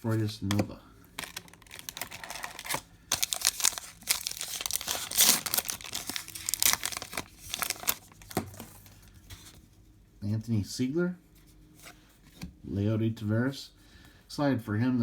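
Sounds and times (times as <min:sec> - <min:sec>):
wrapper tearing and crinkling: 0:01.2 - 0:08.9.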